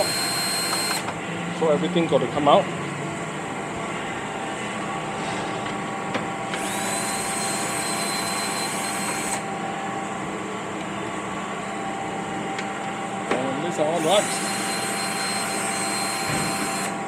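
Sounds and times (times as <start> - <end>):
power tool whining: 0.0 - 1.2, 6.5 - 9.5, 14.0 - 17.0
workshop machinery hum: 0.0 - 17.0.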